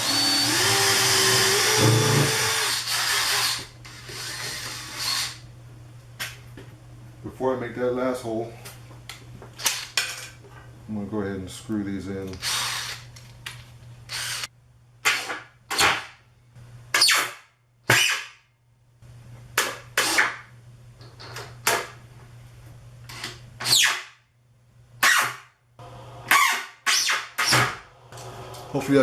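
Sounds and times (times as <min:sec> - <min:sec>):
cordless drill driving screws: 0:00.0 - 0:05.4, 0:12.4 - 0:13.1, 0:14.1 - 0:14.5
steady low hum: 0:10.2 - 0:15.0.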